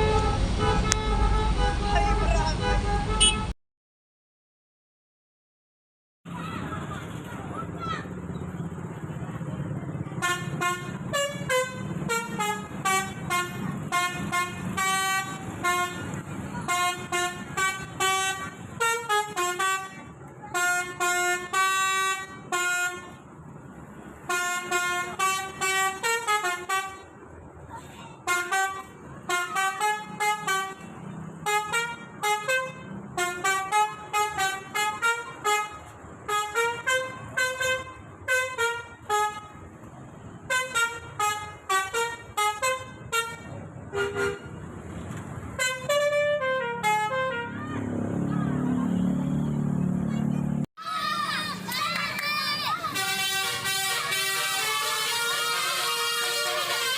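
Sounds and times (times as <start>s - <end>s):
multi-tone musical horns: 0.0s - 3.6s, 10.2s - 23.2s, 24.2s - 27.1s, 28.2s - 39.7s, 40.4s - 44.6s, 45.5s - 47.8s, 52.6s - 56.9s.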